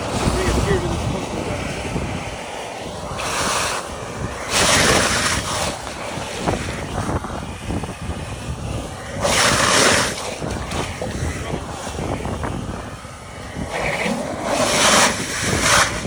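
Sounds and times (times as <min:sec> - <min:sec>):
loud hissing rushes: 0:00.0 - 0:16.0.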